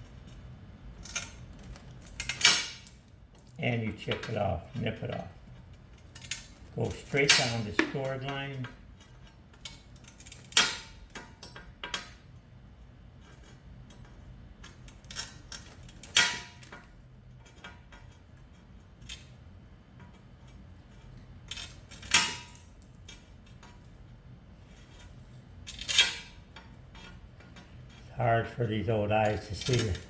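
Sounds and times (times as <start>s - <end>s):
tool and chips clinking: 6.0s - 12.1s, 25.7s - 30.0s.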